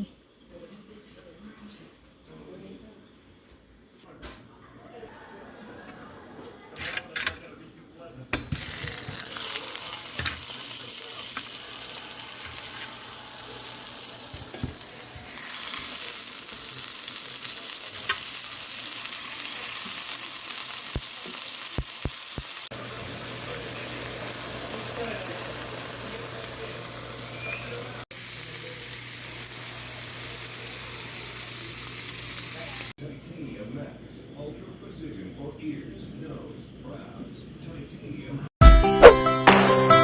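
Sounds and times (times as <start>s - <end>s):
food sizzling in frying pan: 8.4s - 33.0s.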